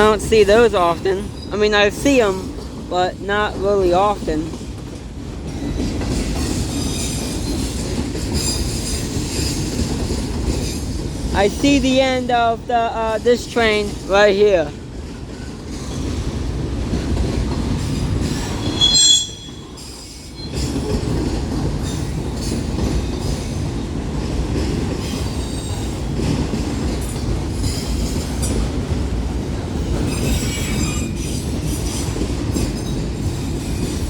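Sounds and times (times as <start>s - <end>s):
train wheels rumbling on rails: 0.0s - 34.0s
high wheel squeal: 18.4s - 20.7s, 30.1s - 32.0s.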